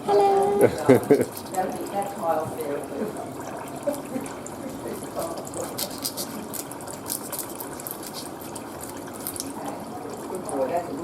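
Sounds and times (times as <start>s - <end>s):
tap water running: 0.0s - 11.0s.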